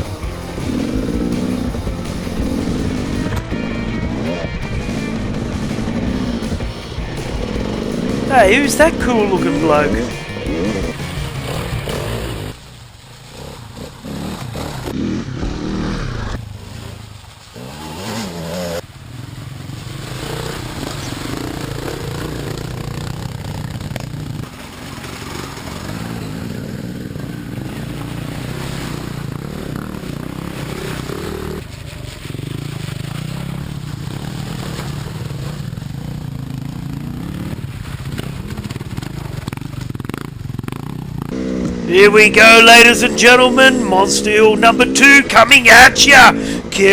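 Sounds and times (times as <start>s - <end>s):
dirt bike engine: 0.0s - 46.9s.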